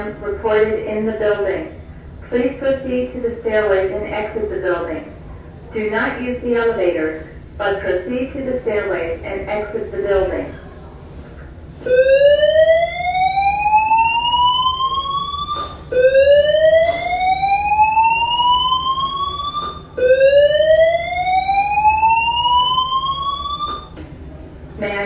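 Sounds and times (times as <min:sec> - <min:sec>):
fire alarm whoop tone: 0:11.8 - 0:24.0.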